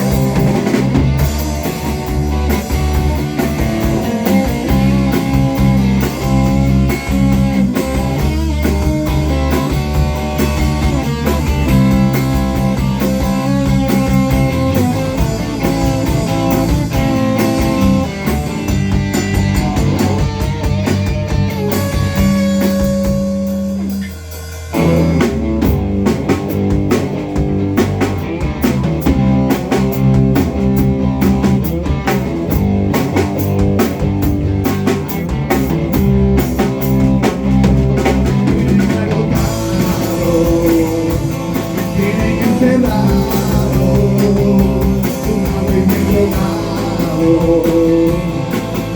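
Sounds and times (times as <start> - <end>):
band playing live: 0.0 - 48.9
drums hitting hard: 0.0 - 48.9.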